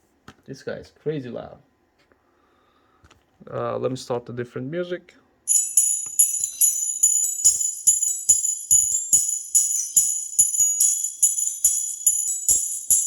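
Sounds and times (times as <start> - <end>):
thin treble music with beat: 5.5 - 13.0.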